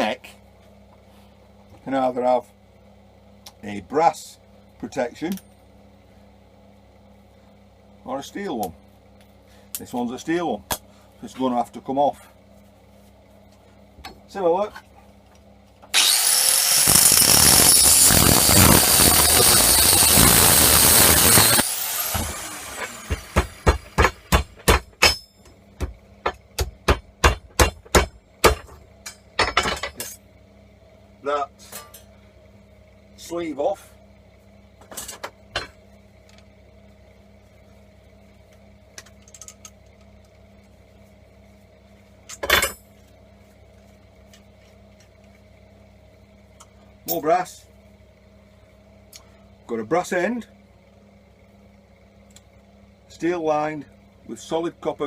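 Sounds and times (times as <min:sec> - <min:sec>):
faint steady hum: 0:00.0 - 0:55.0
angle grinder cutting metal: 0:15.9 - 0:24.3.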